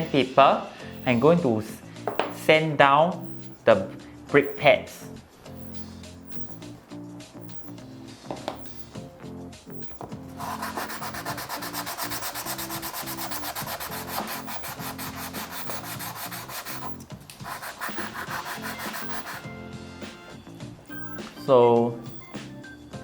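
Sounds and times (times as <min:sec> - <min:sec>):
brake pad sanding on sandpaper: 0:01.0 - 0:01.3, 0:09.7 - 0:19.5.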